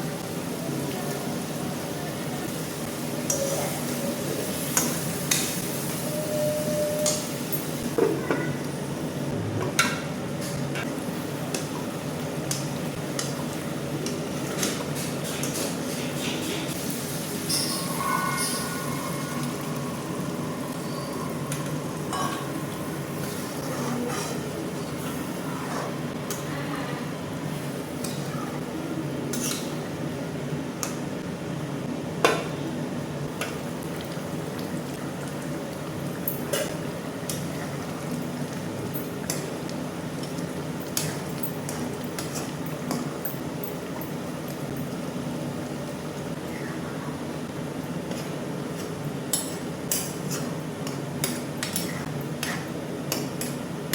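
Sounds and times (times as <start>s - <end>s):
cooking noise: 0.0s - 53.9s
utensil scraping a pan: 23.6s - 24.5s.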